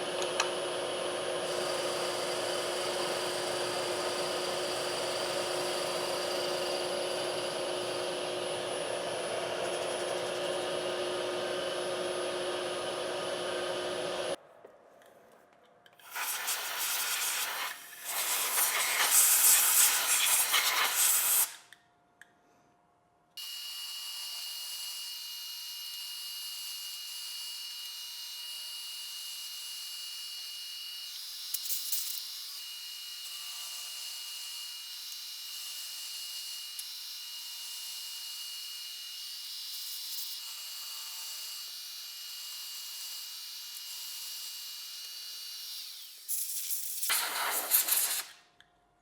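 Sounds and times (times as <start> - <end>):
power tool whining: 0.0 - 14.4.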